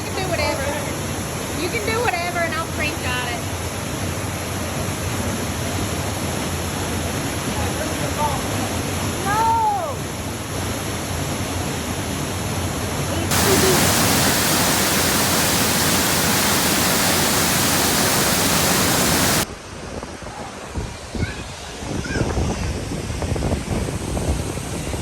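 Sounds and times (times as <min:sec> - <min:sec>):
waterfall rushing: 0:13.1 - 0:19.5.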